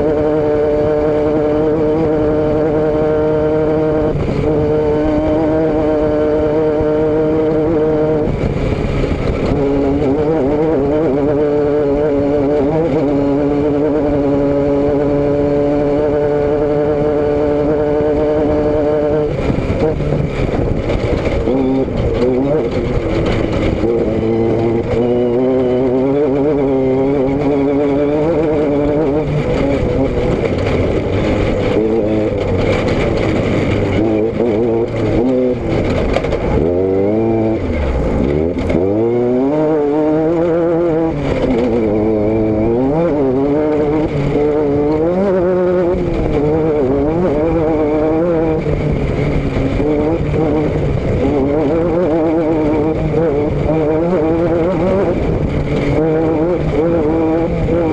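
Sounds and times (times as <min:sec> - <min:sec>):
vehicle engine running: 0:00.0 - 0:57.9.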